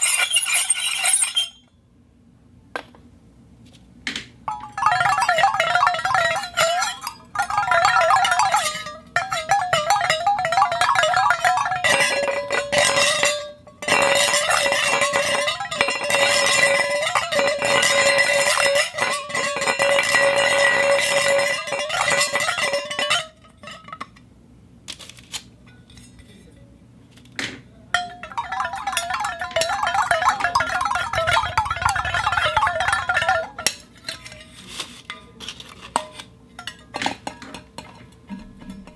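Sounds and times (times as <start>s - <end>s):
ball rolling in metal bowl: 0.0s - 1.6s, 4.5s - 24.1s, 27.9s - 38.9s
bowl ringing: 4.5s - 24.0s, 27.9s - 34.4s.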